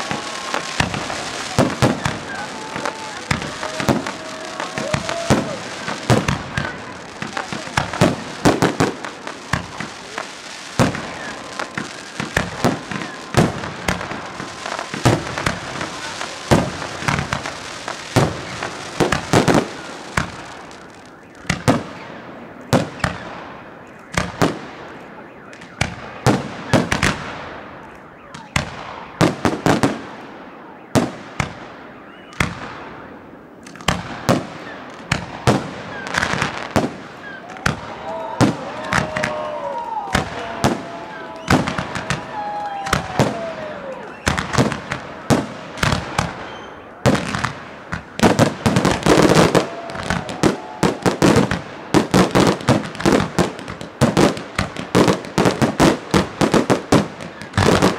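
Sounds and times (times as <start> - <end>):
fireworks crackling hiss: 0.0 - 25.2, 32.3 - 57.9
fireworks bangs: 0.0 - 57.9.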